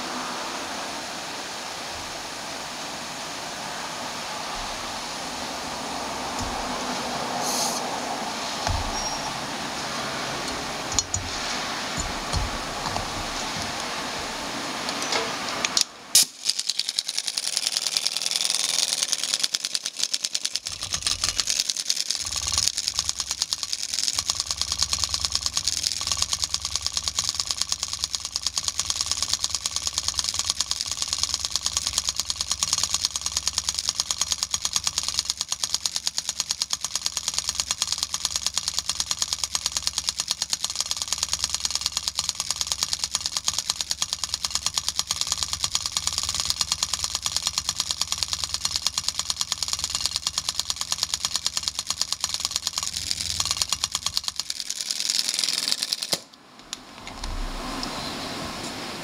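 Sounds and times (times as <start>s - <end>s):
valve lapping tool rattling: 6.2s - 7.9s, 10.1s - 14.0s, 16.5s - 56.1s.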